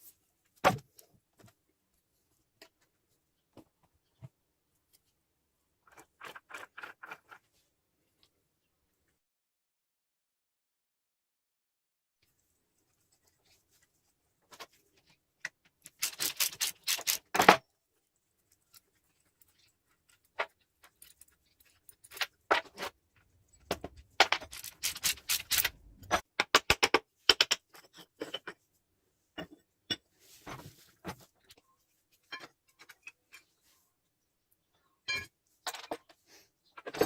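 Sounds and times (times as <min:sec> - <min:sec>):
metal tools clicking and knocking: 0:18.7 - 0:28.6.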